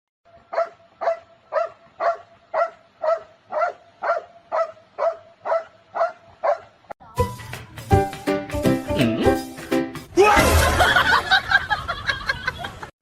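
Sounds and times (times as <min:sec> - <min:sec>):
dog barking: 0:00.5 - 0:06.7.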